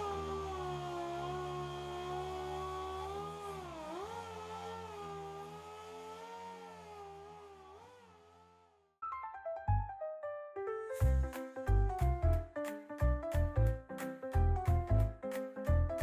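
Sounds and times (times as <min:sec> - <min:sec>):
orbital sander whining: 0:00.0 - 0:08.5
piano music: 0:09.0 - 0:16.0.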